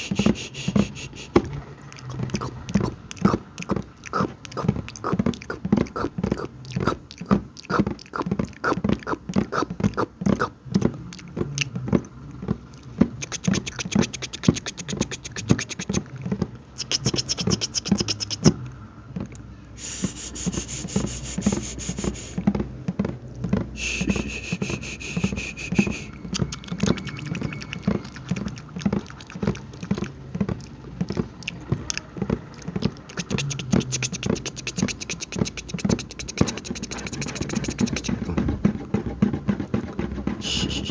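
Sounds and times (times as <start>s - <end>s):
breathy hiss: 0.0s - 1.4s, 19.8s - 22.4s
wet mouth clicks and smacks: 0.0s - 12.1s, 12.7s - 22.4s, 23.3s - 38.4s.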